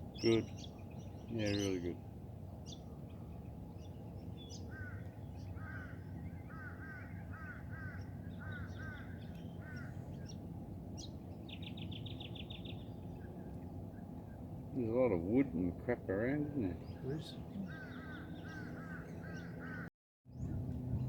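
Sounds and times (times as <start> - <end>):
low background rumble: 0.0 - 21.0
bird call notes: 16.6 - 19.9.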